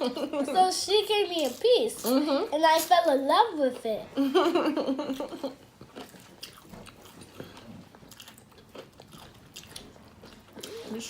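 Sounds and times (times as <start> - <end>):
person chewing food: 5.0 - 11.0.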